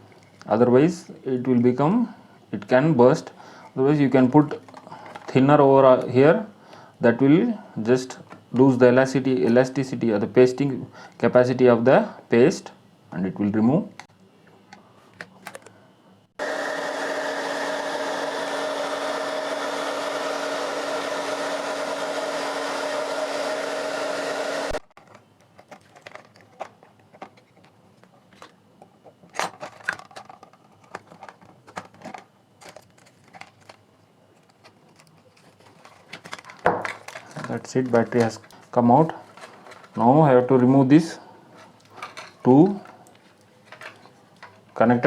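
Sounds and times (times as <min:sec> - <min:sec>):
heat blower humming: 0:14.6 - 0:27.4, 0:34.4 - 0:45.0.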